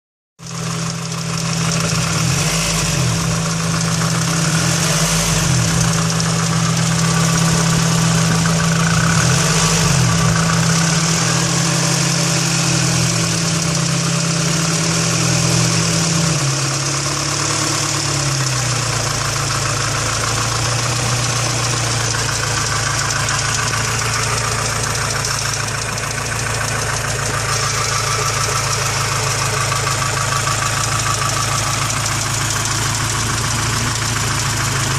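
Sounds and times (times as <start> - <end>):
engine idling with clacking knock: 18.8 - 34.9.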